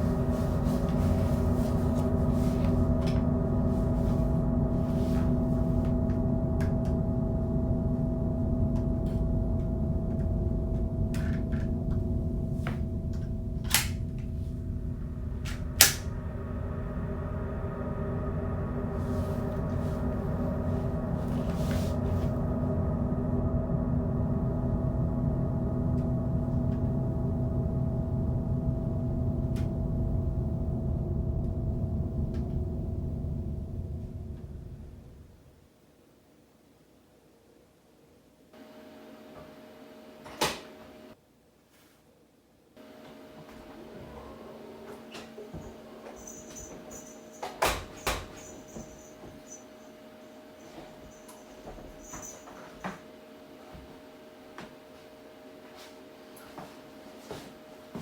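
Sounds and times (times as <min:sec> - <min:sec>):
rumbling bass: 0:00.0 - 0:35.6
low steady drone: 0:00.0 - 0:35.7, 0:42.8 - 0:58.0.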